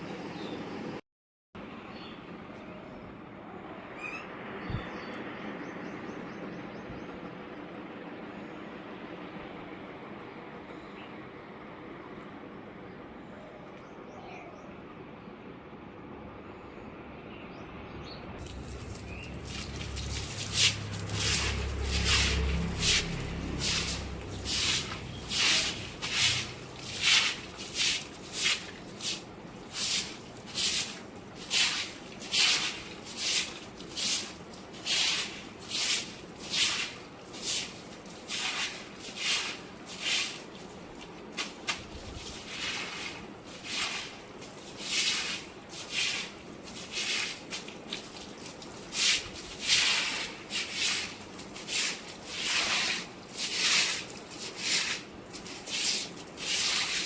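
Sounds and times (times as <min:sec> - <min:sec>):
low rumble: 0:18.4 - 0:27.1
broom swishing water across floor: 0:18.4 - 0:57.0.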